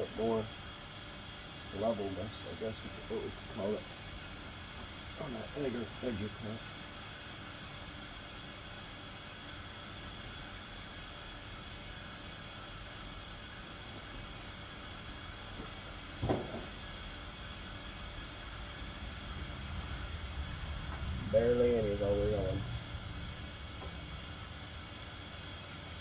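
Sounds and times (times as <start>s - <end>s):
steady background hiss: 0.0s - 8.4s, 9.0s - 26.0s
short knock: 16.2s - 16.8s.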